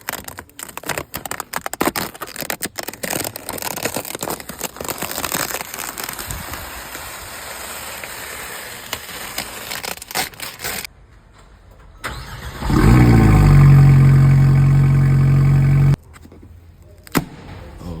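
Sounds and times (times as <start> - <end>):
car engine starting and idling: 12.0 - 16.0.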